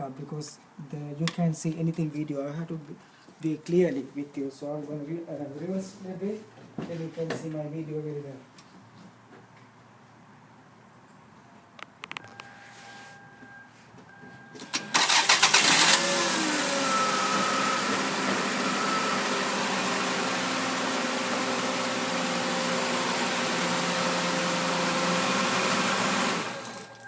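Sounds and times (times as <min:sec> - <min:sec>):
engine starter cranking: 0:14.6 - 0:17.4
car engine idling: 0:14.9 - 0:26.8.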